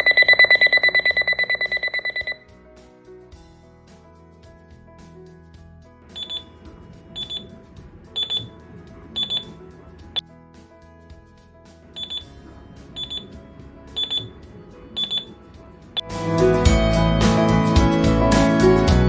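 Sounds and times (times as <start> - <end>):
alarm clock beeping: 0.0 - 2.4, 6.2 - 6.5, 7.2 - 7.5, 8.2 - 8.6, 9.2 - 9.6, 12.0 - 12.4, 13.0 - 13.4, 14.0 - 14.4, 15.0 - 15.4
background music: 0.2 - 19.0.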